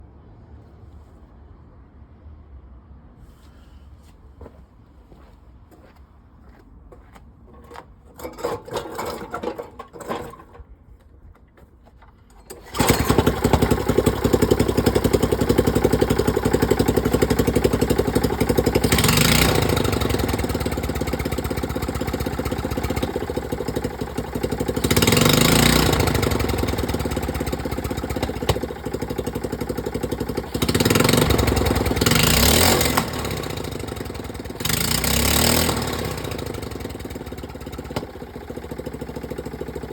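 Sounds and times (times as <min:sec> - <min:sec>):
engine cranking: 0:07.5 - 0:10.8, 0:12.0 - 0:39.9
petrol engine running and popping: 0:08.2 - 0:10.6, 0:12.5 - 0:39.9.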